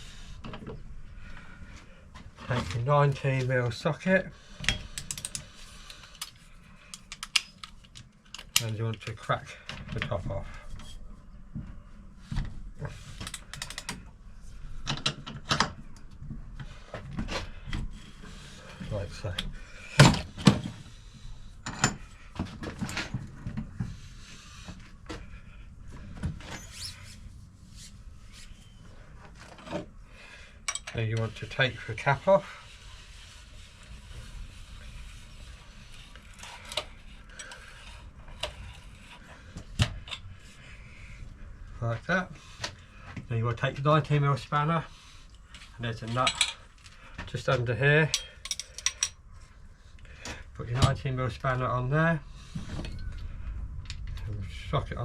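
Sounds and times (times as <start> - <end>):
low steady hum: 0.0 - 55.0
tools and metal parts clicking: 4.7 - 9.2, 13.2 - 14.0, 30.7 - 31.3, 46.1 - 46.9, 48.1 - 49.2.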